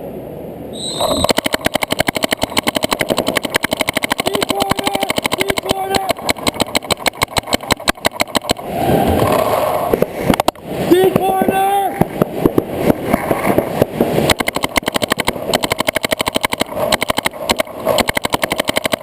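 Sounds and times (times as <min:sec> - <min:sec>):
short high beep: 0:00.7 - 0:01.4
paintball markers firing rapidly: 0:00.9 - 0:08.7, 0:10.3 - 0:19.0.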